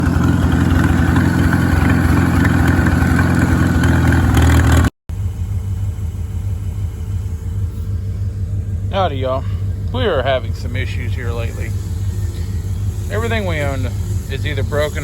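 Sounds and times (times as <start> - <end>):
engine running loudly: 0.0 - 15.0
low engine rumble: 0.0 - 15.0.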